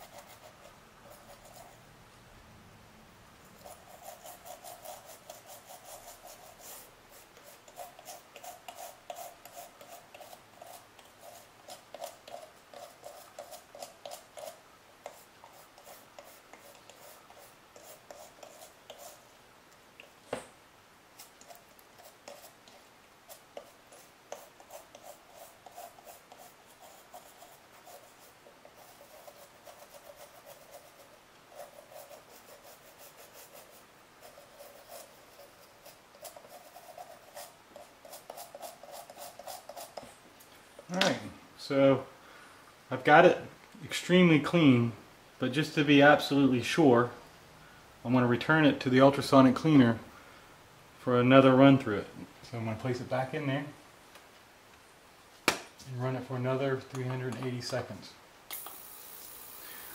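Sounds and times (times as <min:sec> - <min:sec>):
small brush scratching: 0:00.0 - 0:01.8, 0:03.4 - 0:20.2, 0:21.1 - 0:40.2.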